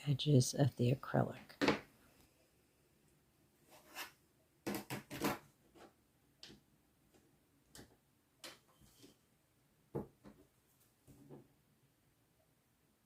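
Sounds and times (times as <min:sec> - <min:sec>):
clicks and scraping on acrylic sheet: 0:03.7 - 0:06.6.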